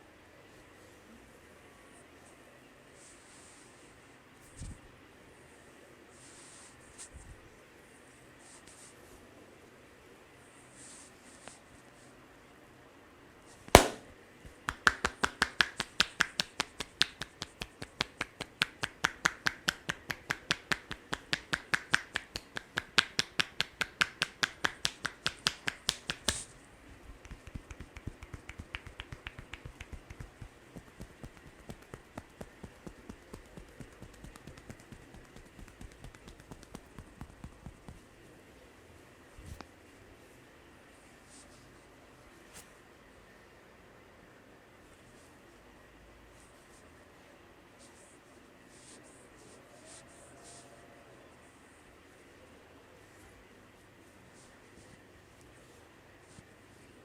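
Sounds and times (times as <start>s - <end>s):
hands tapping in sharp claps: 13.8s - 38.0s.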